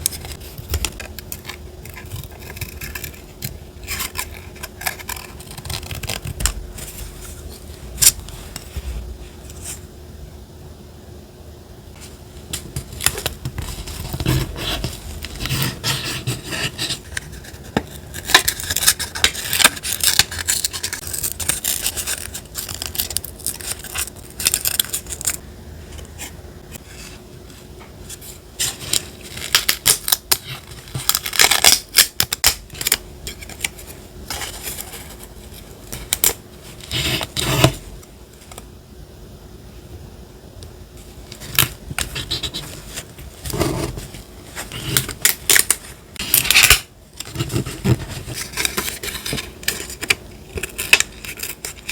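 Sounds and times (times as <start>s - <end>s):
paper rustling and scraping: 12.0s - 25.4s, 32.7s - 37.9s, 41.3s - 51.9s.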